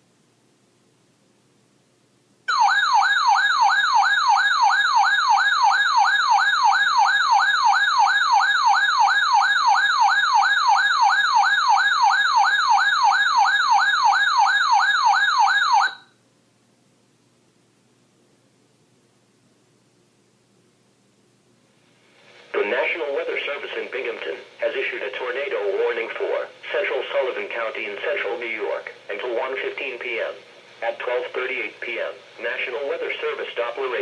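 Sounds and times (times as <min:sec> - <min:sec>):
warbling radio alarm tone: 0:02.5 - 0:16.1.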